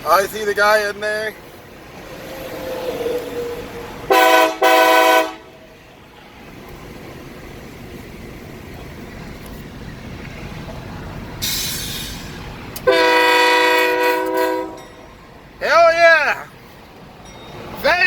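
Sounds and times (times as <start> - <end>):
train air horn: 4.1 - 5.6, 12.8 - 14.8
burst of hiss: 11.4 - 12.5.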